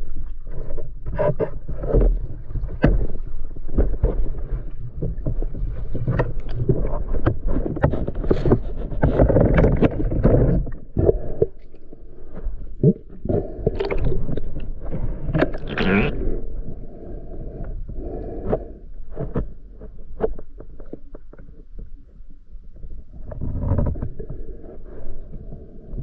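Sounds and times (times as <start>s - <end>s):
water sloshing and splashing: 0.0s - 17.6s.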